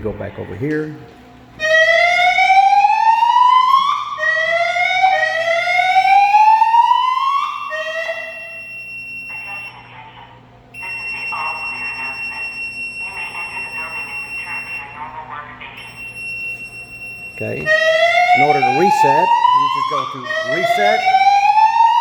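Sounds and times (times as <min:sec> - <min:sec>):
muffled recorded voice message: 0:09.3 - 0:15.8
steady high-pitched tone: 0:10.8 - 0:15.1, 0:15.8 - 0:21.6.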